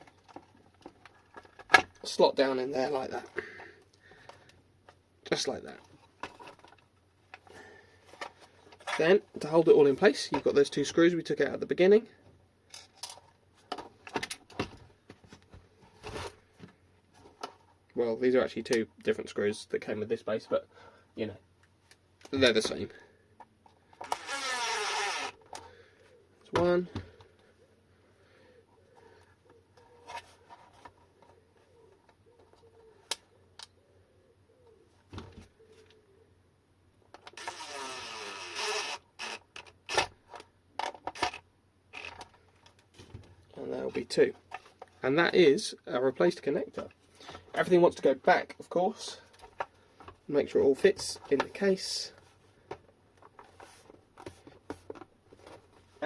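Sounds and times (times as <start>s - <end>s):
plastic part scraping: 8.1s - 9.2s, 37.1s - 42.9s
screw grinding into plastic: 24.0s - 25.6s, 37.2s - 40.2s, 41.1s - 42.3s.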